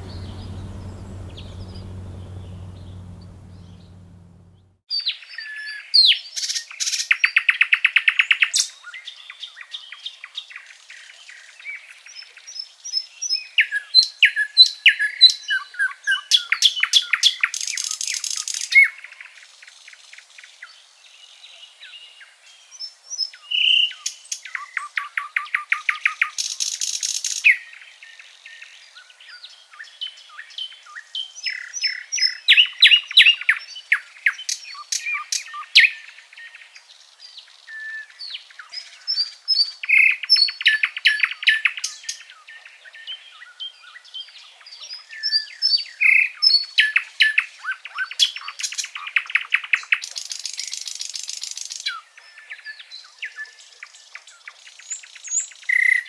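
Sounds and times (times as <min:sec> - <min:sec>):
songbirds singing and chirping: 0:00.0 - 0:04.7.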